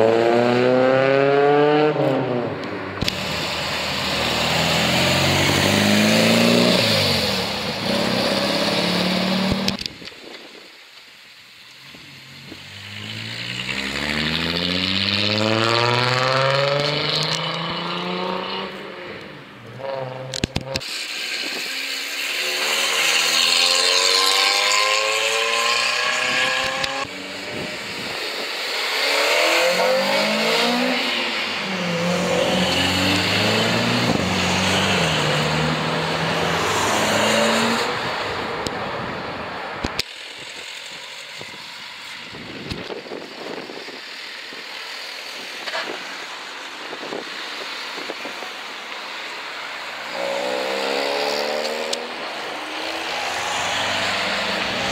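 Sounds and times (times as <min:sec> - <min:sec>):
car engines revving: 0:00.0 - 0:10.1, 0:11.6 - 0:54.9.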